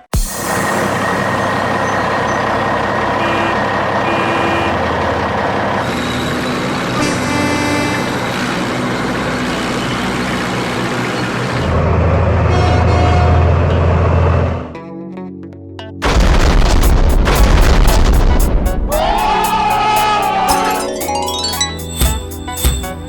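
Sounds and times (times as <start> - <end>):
truck engine running: 0.2 - 14.7, 16.0 - 23.0
deep engine drone: 0.3 - 14.8.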